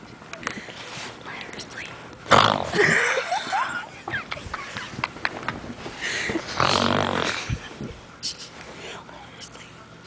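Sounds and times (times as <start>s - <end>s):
person snoring: 6.5s - 7.5s.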